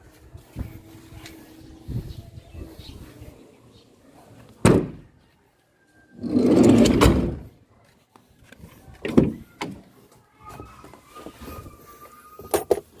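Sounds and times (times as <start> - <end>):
van door sliding and thudding shut: 6.2 - 7.5.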